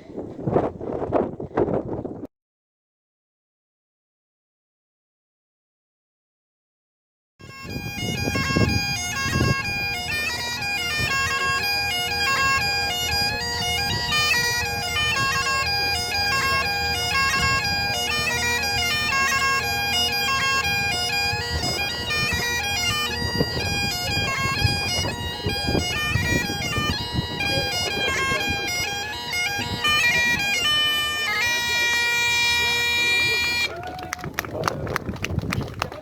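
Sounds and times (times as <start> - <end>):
bagpipes playing a tune: 7.4 - 33.8.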